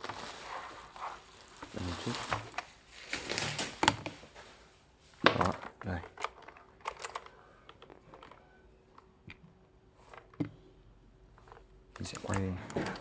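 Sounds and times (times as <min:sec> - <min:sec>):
keyboard plastic clicks: 0:05.2 - 0:09.4, 0:11.4 - 0:13.0.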